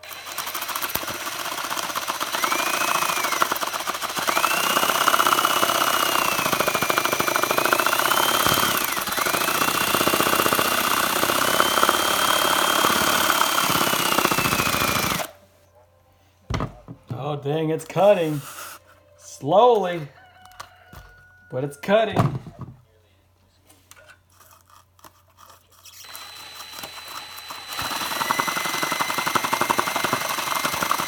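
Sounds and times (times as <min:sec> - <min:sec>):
power drill motor whine: 0:00.0 - 0:15.3, 0:26.0 - 0:31.0.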